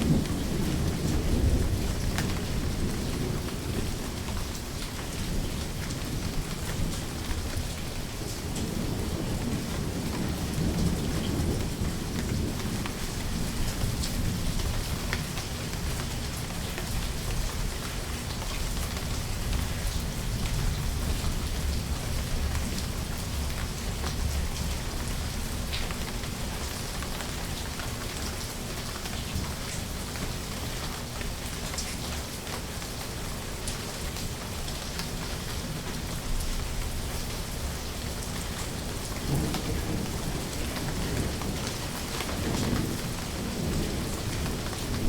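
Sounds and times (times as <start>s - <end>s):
rolling thunder rumbling: 0.0s - 17.7s, 38.8s - 45.0s
heavy rain falling: 0.0s - 45.0s.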